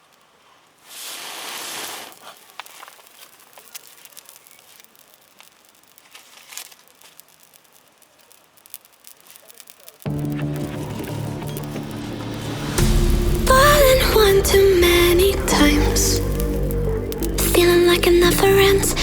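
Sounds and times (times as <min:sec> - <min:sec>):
rustle: 0:00.0 - 0:10.1
faint clicks and crackles: 0:00.0 - 0:19.0.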